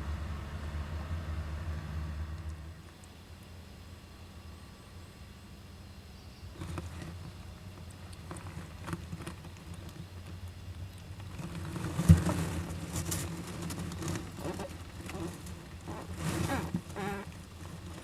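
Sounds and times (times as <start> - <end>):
claws scratching in nest box: 11.3 - 18.0.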